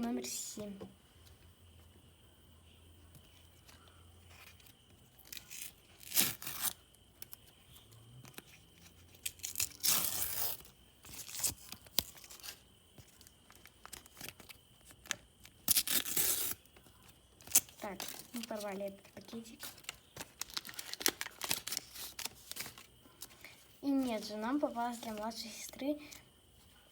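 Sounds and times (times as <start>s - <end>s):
paper crinkling and rustling: 8.3s - 26.2s
paper ripping: 9.3s - 12.5s, 15.6s - 16.6s.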